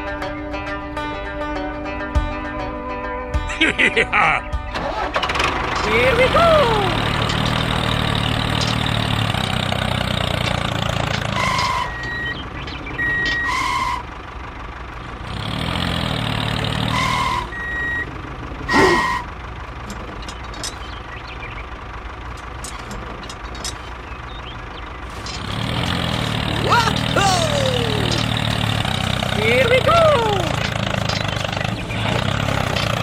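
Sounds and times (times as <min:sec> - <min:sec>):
vehicle engine running: 0:00.0 - 0:33.0
short beeps: 0:11.4 - 0:12.4, 0:13.0 - 0:13.7, 0:17.0 - 0:18.1.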